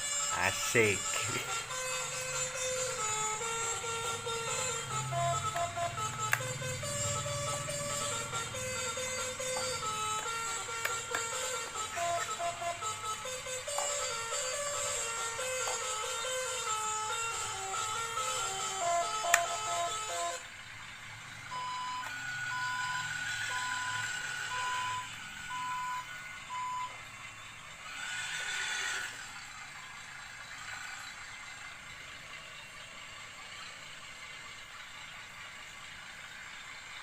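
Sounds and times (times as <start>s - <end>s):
horn melody: 0.1s - 20.5s
reversing alarm beeps: 21.5s - 27.1s.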